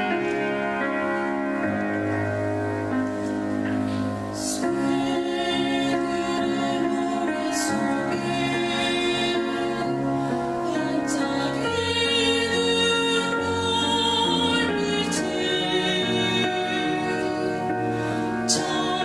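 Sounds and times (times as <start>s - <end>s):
instrumental accompaniment: 0.0s - 19.0s
choir singing a hymn: 4.3s - 19.0s.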